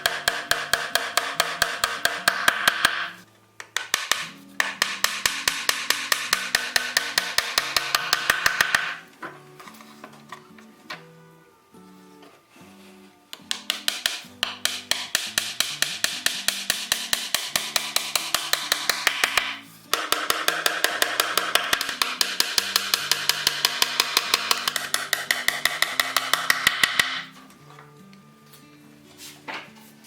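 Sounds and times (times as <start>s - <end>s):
background music: 0.0s - 30.0s.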